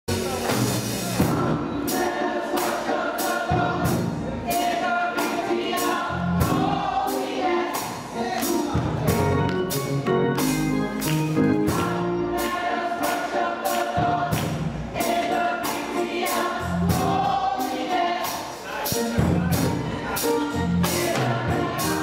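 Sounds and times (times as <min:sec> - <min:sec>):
bass notes: 0:00.1 - 0:01.9, 0:08.4 - 0:12.7, 0:18.9 - 0:22.0
gospel choir singing: 0:00.1 - 0:22.0
percussion beat: 0:00.1 - 0:22.0.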